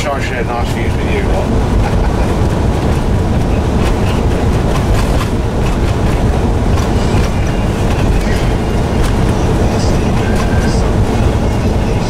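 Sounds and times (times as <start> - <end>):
truck engine and road noise: 0.0 - 12.0
light rattles and clicks: 2.8 - 12.0.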